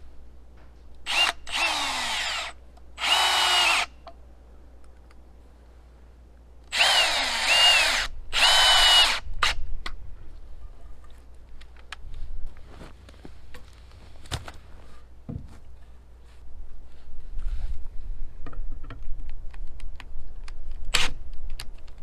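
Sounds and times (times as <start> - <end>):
power drill drilling into wood: 1.1 - 3.9, 6.7 - 9.6.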